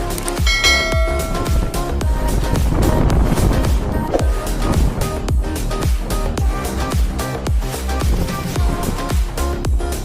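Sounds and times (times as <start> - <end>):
bell-like chime: 0.4 - 2.2
electronic music with bass kicks: 0.4 - 10.0.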